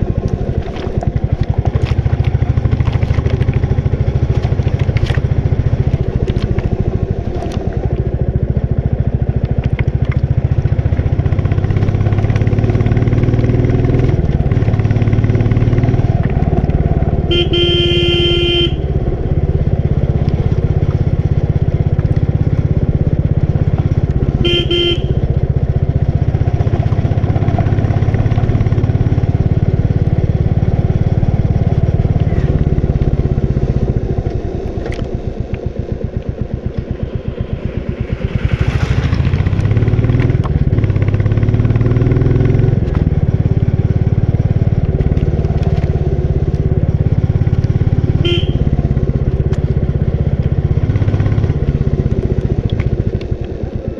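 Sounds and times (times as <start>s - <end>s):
motorcycle engine thumping: 13.6s - 53.6s
horn honking: 17.1s - 21.2s, 24.2s - 25.9s, 48.0s - 49.2s.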